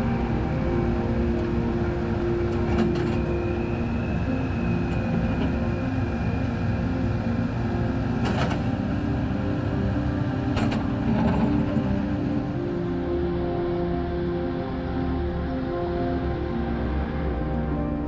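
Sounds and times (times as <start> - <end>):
heavy engine rumble: 0.0 - 14.1.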